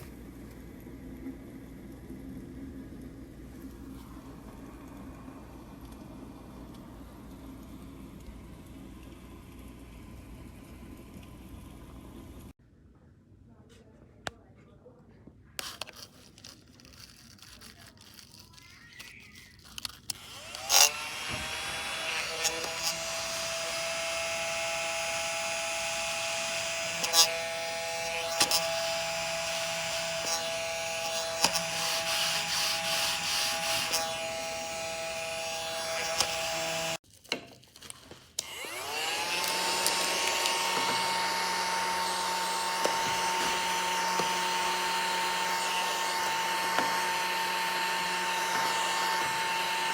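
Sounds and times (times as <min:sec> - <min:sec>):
mini vacuum motor whine: 0:15.6 - 0:37.0, 0:38.4 - 0:49.9.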